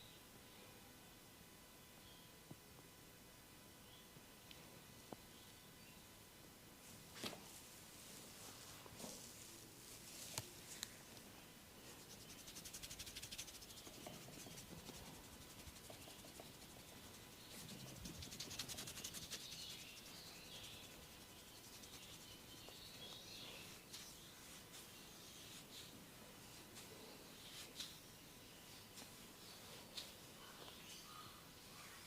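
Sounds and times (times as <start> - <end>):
hands scratching hair and scalp: 11.8 - 28.1.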